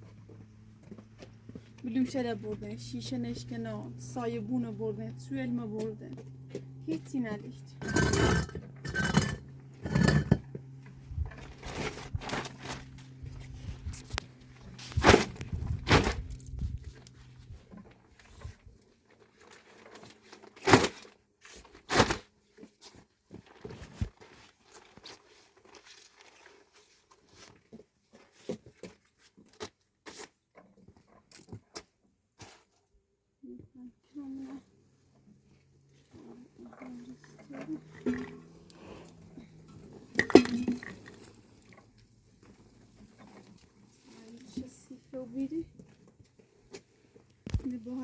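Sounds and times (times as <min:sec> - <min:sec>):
steady low hum: 0:02.5 - 0:16.9.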